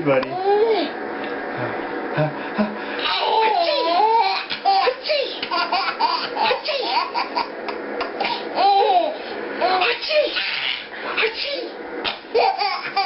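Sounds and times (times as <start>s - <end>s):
baby belly-laughing: 12.1s - 13.0s.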